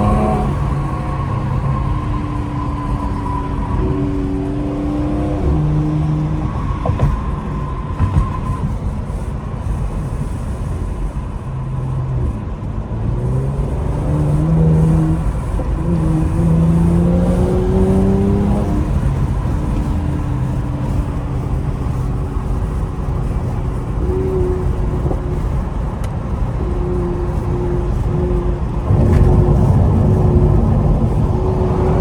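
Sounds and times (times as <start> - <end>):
car engine accelerating: 0.0 - 8.2, 11.7 - 32.0
exhaust cracks: 13.9 - 32.0.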